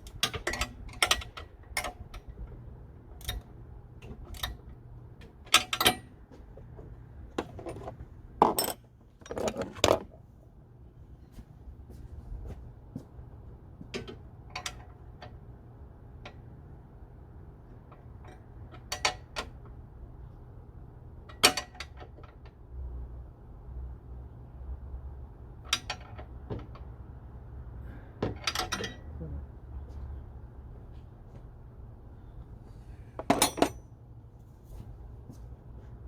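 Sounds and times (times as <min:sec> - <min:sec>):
low steady hum: 0:00.0 - 0:36.0
metal tools clinking: 0:08.4 - 0:10.0, 0:33.3 - 0:33.8.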